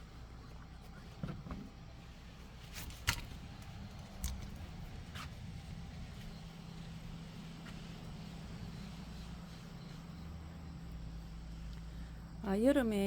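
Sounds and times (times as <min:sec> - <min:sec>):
low mechanical hum: 0:00.0 - 0:13.0
faint hiss: 0:04.8 - 0:13.0.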